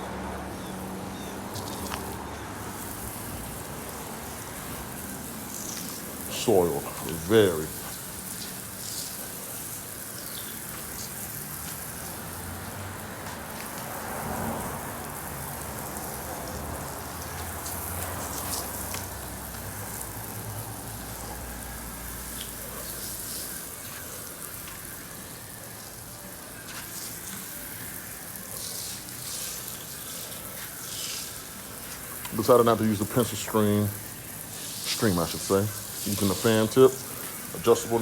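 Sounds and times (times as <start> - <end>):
spray pattering on patio: 0.0 - 38.0
hose nozzle spraying: 1.5 - 12.4, 15.5 - 24.8, 26.6 - 38.0.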